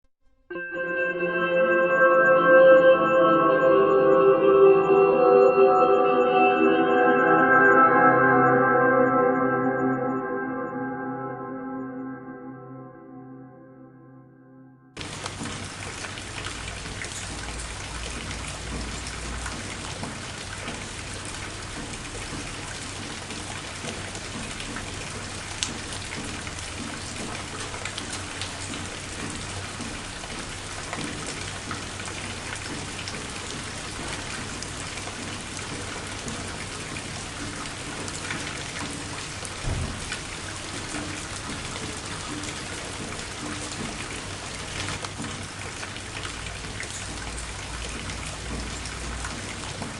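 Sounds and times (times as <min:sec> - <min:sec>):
steady rain falling: 0:15.0 - 0:49.9.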